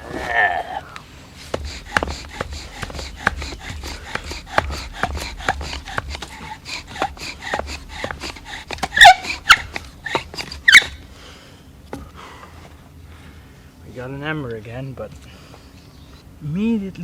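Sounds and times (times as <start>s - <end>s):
bow drill spindle rasping and squeaking: 1.4s - 11.0s.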